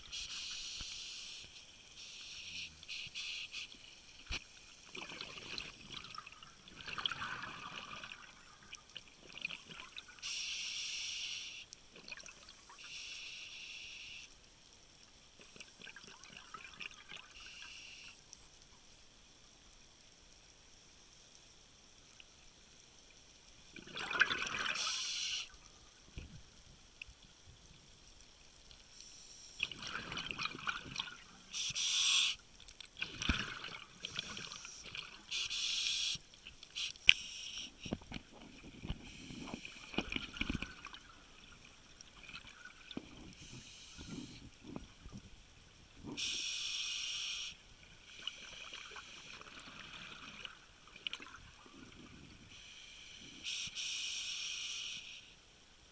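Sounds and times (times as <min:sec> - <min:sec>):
short bursts of hiss: 0:00.0 - 0:04.7, 0:10.2 - 0:11.7, 0:12.8 - 0:14.4, 0:17.4 - 0:18.2, 0:24.6 - 0:25.5, 0:28.9 - 0:29.6, 0:31.5 - 0:32.4, 0:34.0 - 0:38.0, 0:39.0 - 0:40.0, 0:43.3 - 0:44.5, 0:46.1 - 0:49.4, 0:52.5 - 0:55.4
water sloshing and trickling: 0:04.2 - 0:10.2, 0:15.4 - 0:17.4, 0:23.7 - 0:24.8, 0:29.6 - 0:31.5, 0:32.6 - 0:35.3, 0:37.8 - 0:46.0, 0:47.8 - 0:52.4.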